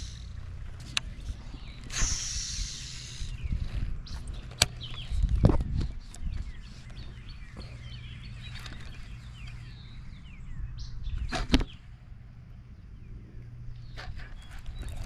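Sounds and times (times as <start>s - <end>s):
low rush: 0.0s - 4.5s
faint birds chirping: 0.0s - 15.0s.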